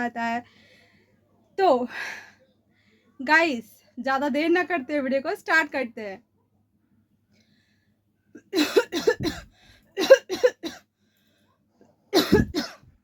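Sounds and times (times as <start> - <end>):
woman coughing: 8.4 - 10.9, 12.2 - 12.9.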